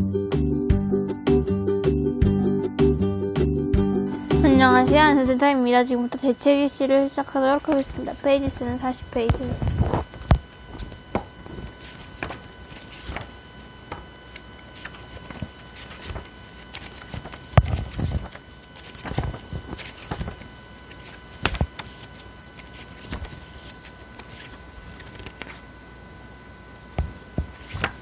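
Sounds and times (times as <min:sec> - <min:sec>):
faint electrical whine: 0:04.0 - 0:28.0
book pages flipping: 0:07.0 - 0:25.7, 0:27.0 - 0:28.0.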